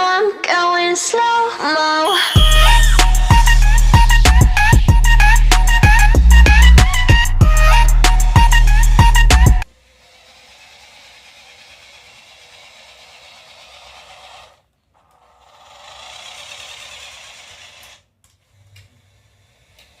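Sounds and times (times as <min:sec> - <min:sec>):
background music: 0:02.1 - 0:09.6
faint mechanical whirring: 0:08.4 - 0:20.0.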